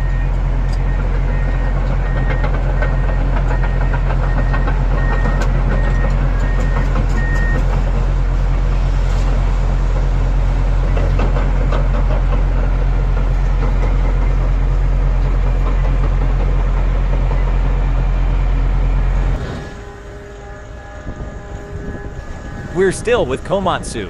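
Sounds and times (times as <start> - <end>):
diesel engine drone: 0.0 - 24.0
steady tones: 19.2 - 24.0.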